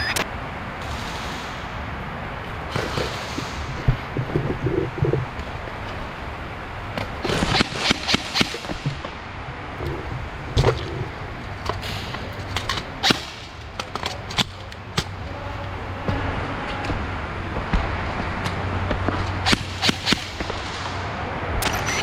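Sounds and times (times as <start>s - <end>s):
airsoft gunshots: 7.2s - 9.0s, 19.4s - 21.0s.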